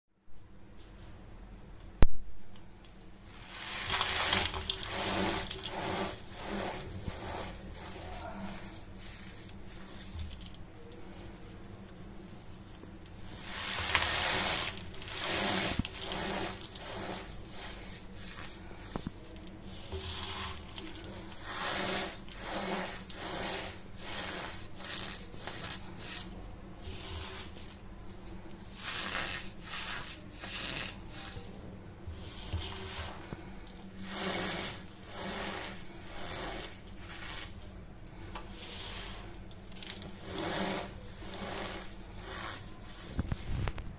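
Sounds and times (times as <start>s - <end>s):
cornstarch crunching and crumbling: 3.3s - 10.5s, 13.2s - 43.4s.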